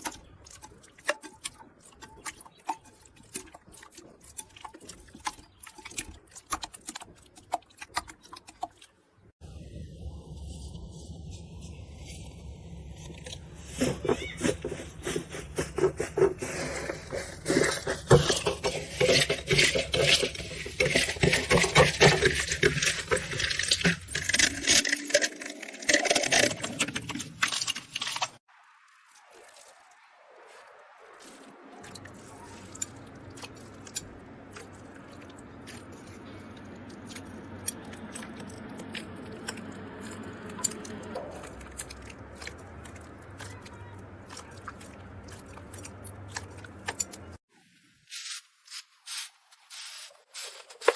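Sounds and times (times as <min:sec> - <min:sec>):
crisp crackling and clicking: 0:12.6 - 0:28.4, 0:31.7 - 0:47.4.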